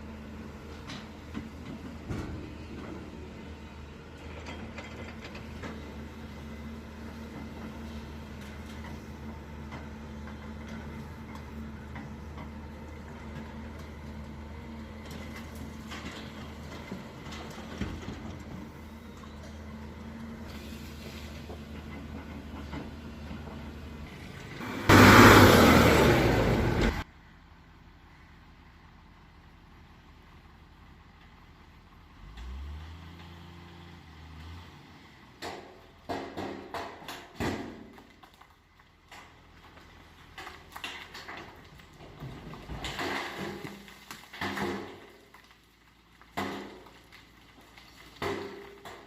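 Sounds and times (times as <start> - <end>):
excavator diesel engine running: 0.0 - 34.6.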